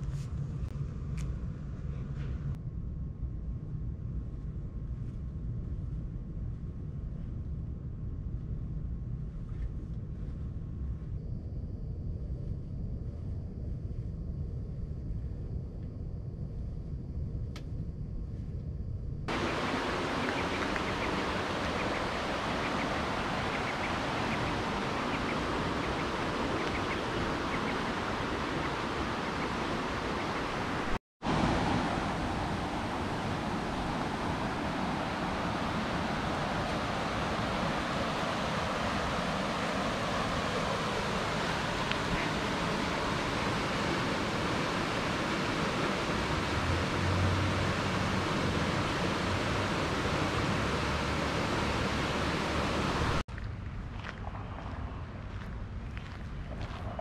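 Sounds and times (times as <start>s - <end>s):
low rumble: 0.0s - 29.8s
running water rushing: 19.3s - 53.2s.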